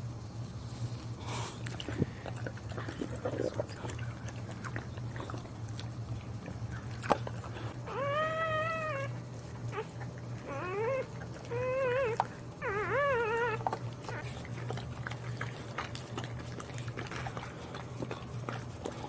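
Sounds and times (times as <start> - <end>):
dog whining: 6.7 - 15.2.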